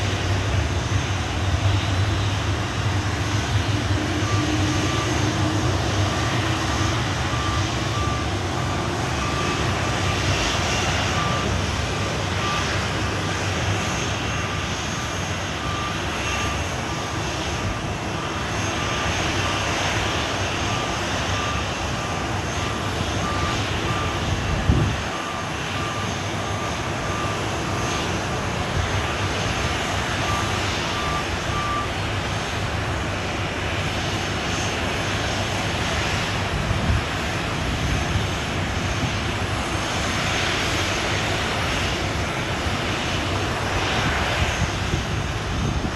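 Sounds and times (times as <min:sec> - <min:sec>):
jet engines running: 0:00.0 - 0:45.9
faint short beep: 0:30.1 - 0:31.9.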